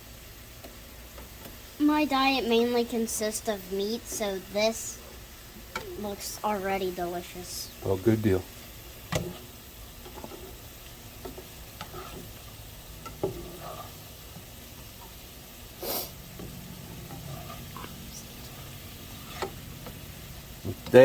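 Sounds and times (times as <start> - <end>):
beef sizzling in a hot pan: 0.0 - 21.0
utensil scraping pan: 9.2 - 14.4, 16.1 - 20.0.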